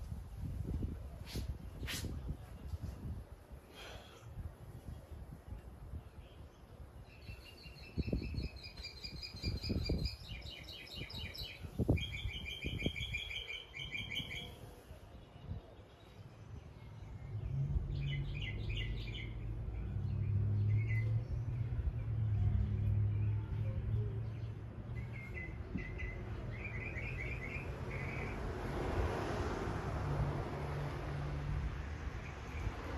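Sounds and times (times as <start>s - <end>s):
small birds chirping: 24.0s - 28.4s.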